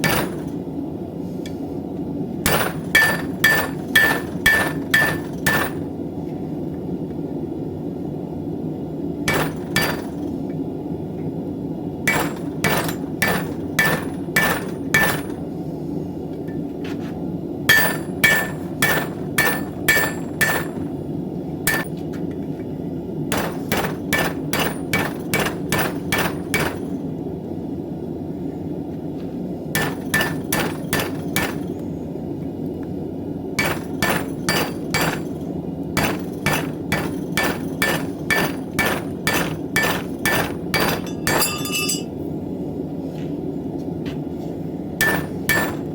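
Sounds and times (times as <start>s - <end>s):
hammer striking metal on anvil: 0.0s - 0.5s, 2.4s - 5.8s, 12.1s - 15.4s, 17.7s - 20.8s, 21.7s - 22.0s, 29.8s - 31.6s, 33.6s - 35.3s, 36.0s - 42.1s, 45.0s - 45.8s.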